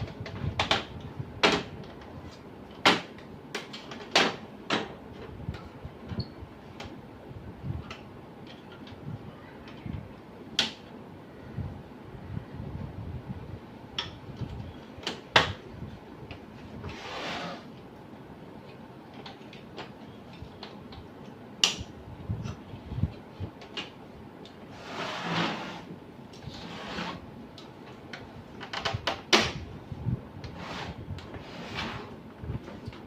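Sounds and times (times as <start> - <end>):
plastic parts clicking and knocking: 0.0 - 2.1, 2.7 - 7.0, 7.8 - 10.0, 18.6 - 22.7, 27.5 - 29.6.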